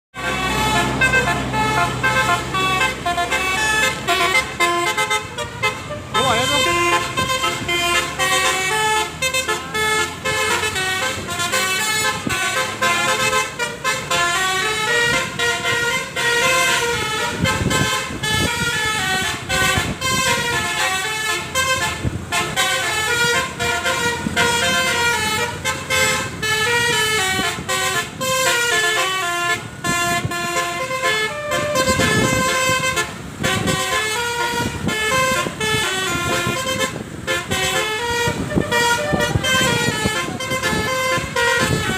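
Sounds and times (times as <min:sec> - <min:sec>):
musical air horns playing melody: 0:00.1 - 0:41.9.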